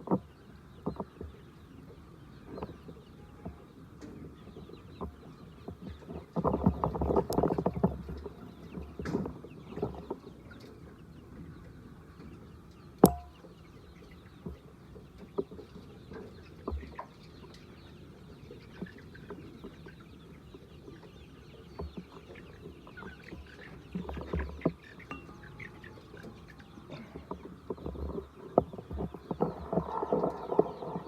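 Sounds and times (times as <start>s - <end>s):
loud sharp ringing knock: 13.0s - 13.4s
hens clucking: 18.4s - 31.0s.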